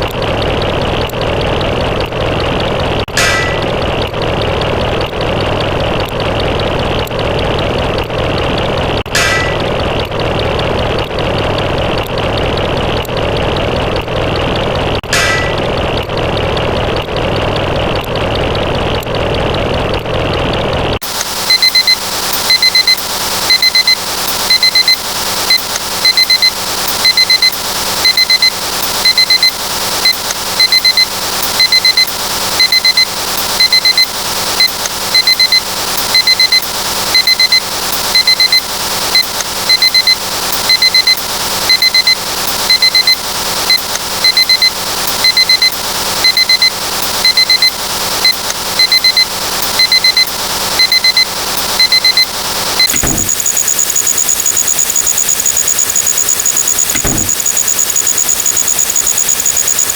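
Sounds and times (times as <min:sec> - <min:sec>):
alarm clock beeping: 0:21.1 - 0:59.9.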